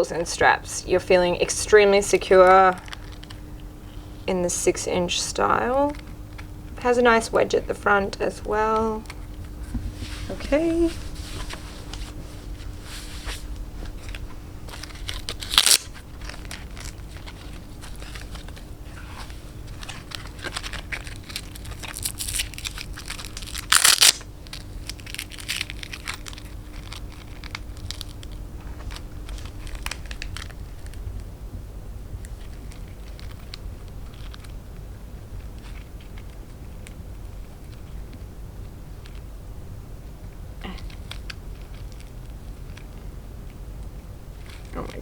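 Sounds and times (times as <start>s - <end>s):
clicks and rustles of straps: 2.8s - 3.7s, 11.4s - 31.3s, 32.2s - 34.6s, 40.8s - 43.0s
velcro strap ripping: 14.8s - 18.4s, 19.8s - 31.0s.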